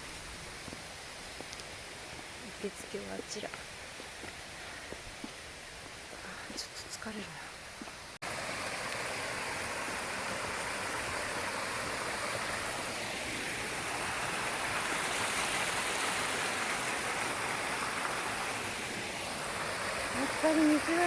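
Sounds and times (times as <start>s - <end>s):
stream water rushing: 7.8s - 21.0s.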